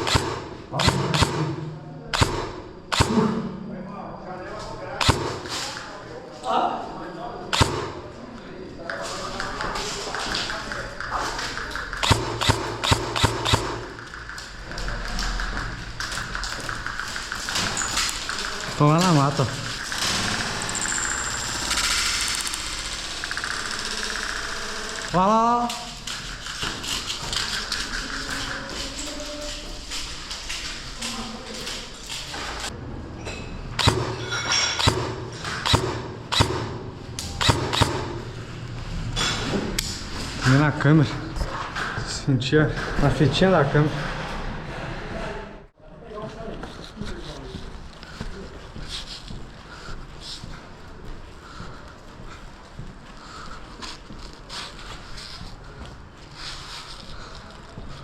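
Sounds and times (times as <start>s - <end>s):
airsoft rifle shots: 0.0s - 3.5s, 5.0s - 5.7s, 7.5s - 8.1s, 11.9s - 14.2s, 33.8s - 34.2s, 34.8s - 38.3s.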